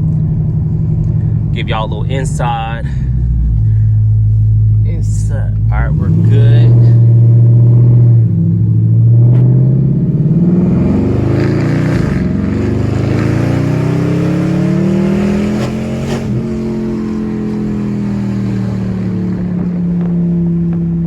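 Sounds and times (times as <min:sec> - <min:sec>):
car engine accelerating: 0:00.0 - 0:21.0.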